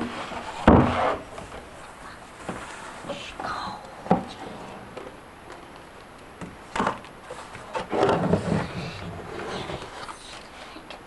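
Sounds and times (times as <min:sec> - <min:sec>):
rustling: 0:00.0 - 0:11.0.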